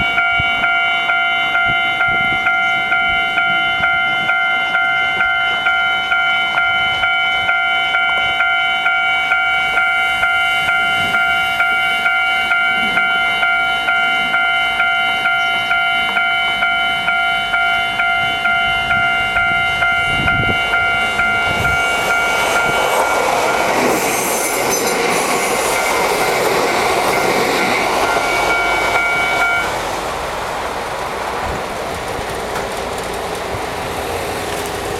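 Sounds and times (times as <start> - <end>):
level crossing bell dinging: 0.0 - 23.7, 27.6 - 29.7
train running noise: 0.0 - 34.9.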